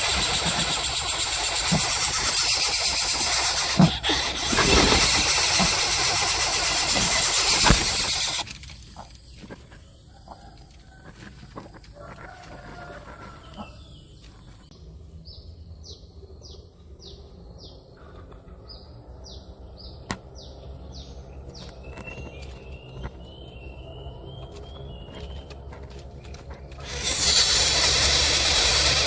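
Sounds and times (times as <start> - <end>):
wild bird calling: 0.0 - 11.0, 12.0 - 14.7, 15.8 - 29.0
sharp click: 6.9 - 8.7.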